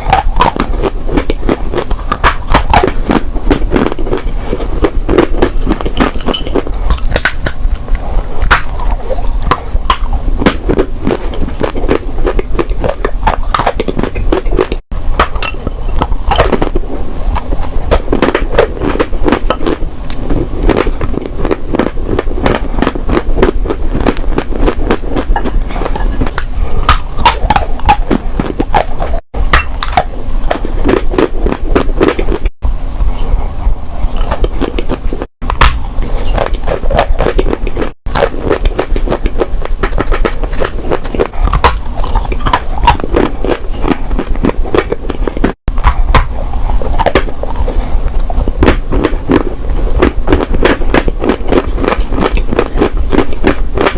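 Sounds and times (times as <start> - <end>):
dry clay being chewed: 0.0 - 53.9.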